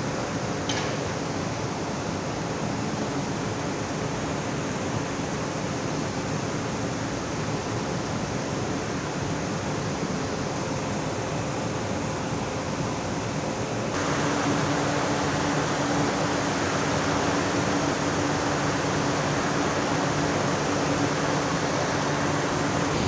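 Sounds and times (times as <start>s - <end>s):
faint steady hum: 13.0s - 23.0s
hot gas jetting rushing noise: 14.0s - 23.0s.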